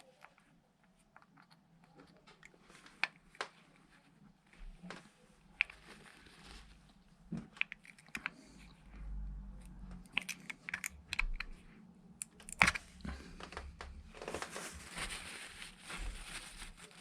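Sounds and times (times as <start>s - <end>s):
small irregular clicks and taps: 0.0s - 4.0s, 7.3s - 14.0s.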